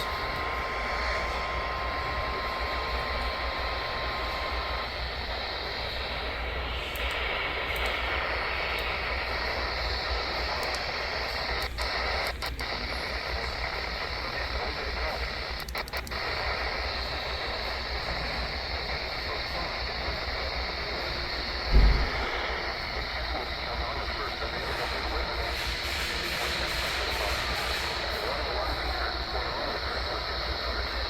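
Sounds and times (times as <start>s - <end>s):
thin steady alarm tone: 0.0s - 10.8s
radio static hiss: 0.0s - 31.0s
static crackles: 0.0s - 31.0s.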